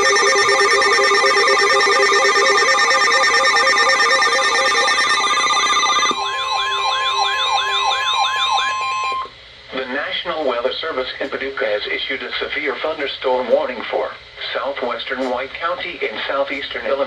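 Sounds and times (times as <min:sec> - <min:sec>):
rising and falling warble: 0:00.0 - 0:09.3
siren-like sweeps: 0:00.0 - 0:09.3
steady high alarm tone: 0:00.0 - 0:09.3
two-note alternating beep: 0:00.0 - 0:09.3.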